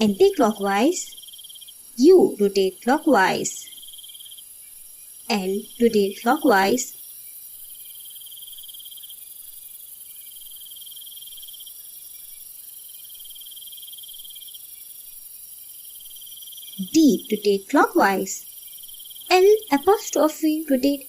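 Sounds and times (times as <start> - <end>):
crickets chirping: 0.0 - 21.0.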